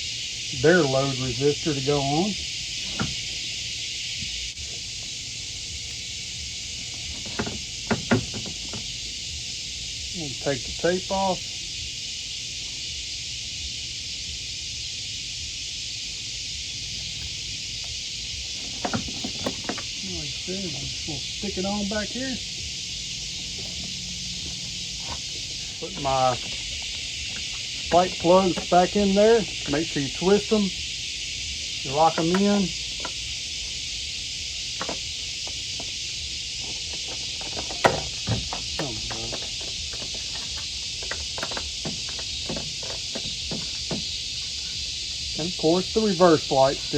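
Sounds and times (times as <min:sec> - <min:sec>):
steady hiss: 0:00.0 - 0:46.9
plastic clicks and knocks: 0:34.8 - 0:35.0, 0:36.6 - 0:44.1.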